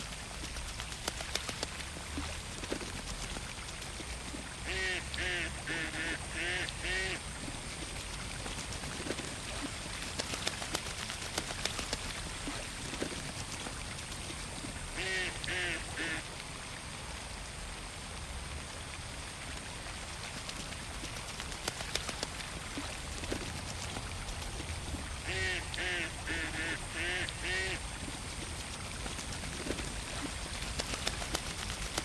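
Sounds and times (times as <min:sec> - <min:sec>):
steady hiss: 0:00.0 - 0:32.0
ducks quacking: 0:04.7 - 0:07.2, 0:25.2 - 0:27.8.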